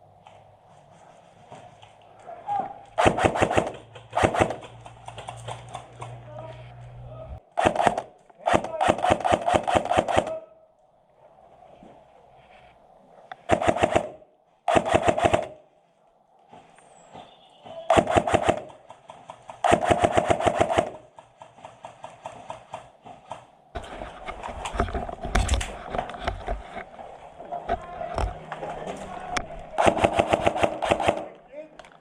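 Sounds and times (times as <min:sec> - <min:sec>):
airsoft guns firing bursts: 0:03.0 - 0:05.2, 0:07.5 - 0:10.5, 0:13.5 - 0:15.6, 0:17.9 - 0:22.9, 0:29.7 - 0:31.4.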